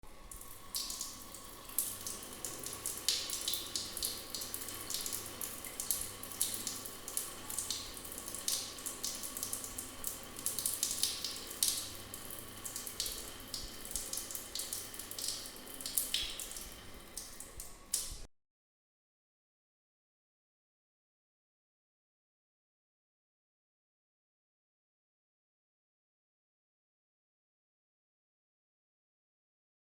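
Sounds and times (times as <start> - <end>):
tap water running and splashing: 0.1 - 18.3.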